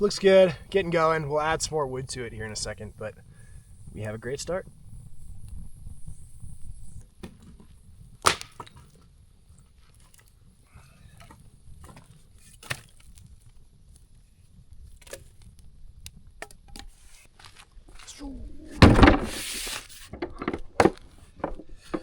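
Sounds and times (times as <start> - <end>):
campfire crackling: 0.0 - 22.0
sharp pops of fire: 3.6 - 9.1.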